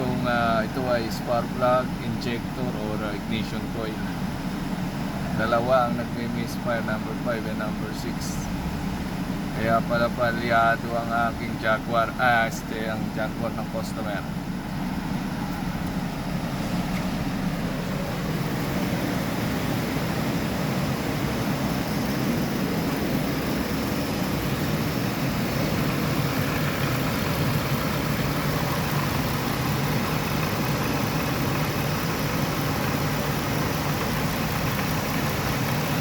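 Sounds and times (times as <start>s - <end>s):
misfiring engine idling: 17.2s - 36.0s.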